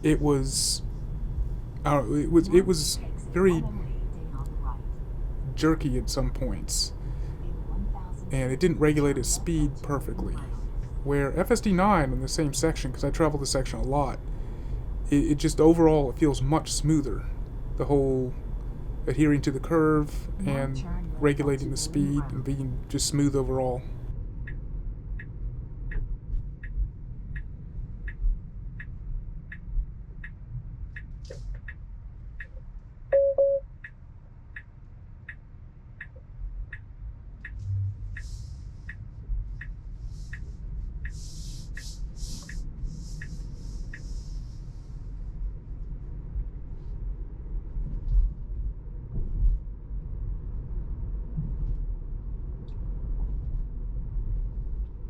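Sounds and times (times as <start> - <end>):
low road rumble: 0.0 - 33.6, 34.3 - 55.0
turn signal ticking: 1.5 - 16.0, 25.2 - 44.6
short tone: 33.1 - 33.6, 37.5 - 38.2.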